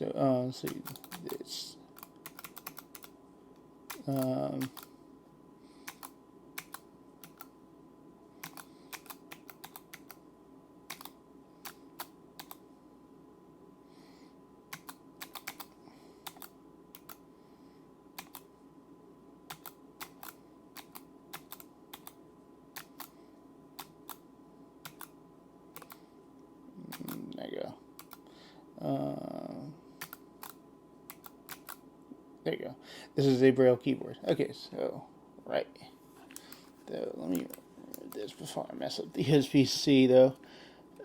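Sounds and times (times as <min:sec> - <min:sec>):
mechanical keyboard keystrokes: 0:00.7 - 0:01.4, 0:02.0 - 0:03.1, 0:08.4 - 0:10.2, 0:10.9 - 0:11.2, 0:14.7 - 0:17.2, 0:19.5 - 0:22.2, 0:24.8 - 0:25.1.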